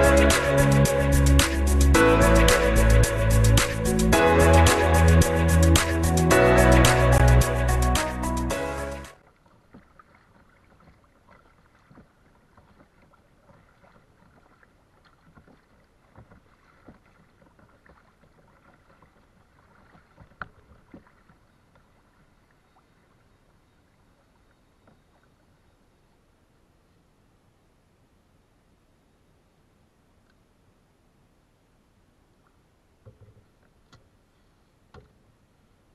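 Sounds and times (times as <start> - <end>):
paddle splashing in water: 9.2 - 25.4.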